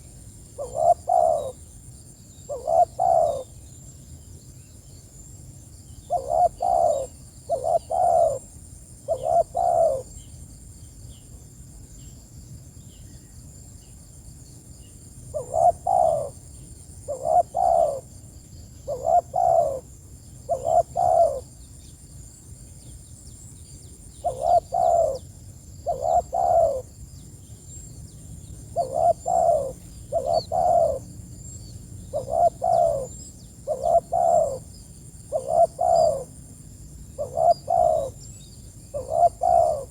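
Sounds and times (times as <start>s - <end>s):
dove cooing: 0.6s - 1.6s, 2.5s - 3.5s, 6.1s - 8.5s, 9.1s - 10.1s, 15.3s - 16.4s, 17.1s - 18.1s, 18.9s - 19.9s, 20.5s - 21.5s, 24.2s - 25.2s, 25.8s - 26.9s, 28.7s - 31.1s, 32.1s - 34.7s, 35.3s - 36.4s, 37.2s - 38.2s, 38.9s - 39.9s.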